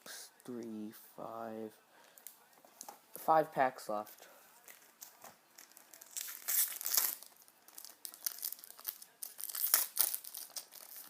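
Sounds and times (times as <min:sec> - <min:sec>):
wrapper crinkling: 0:04.6 - 0:11.0
wrapper ripping: 0:05.0 - 0:11.0.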